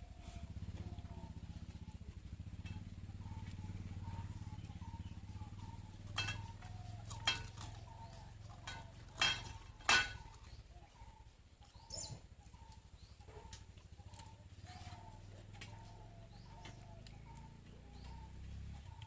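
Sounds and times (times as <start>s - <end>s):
bird calls: 0.0s - 19.0s
low engine hum: 0.0s - 19.0s.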